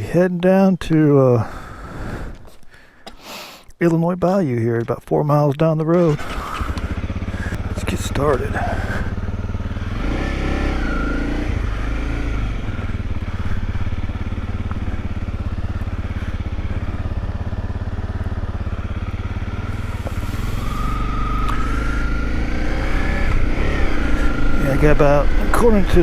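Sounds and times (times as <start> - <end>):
motorcycle engine running: 5.8 - 26.0.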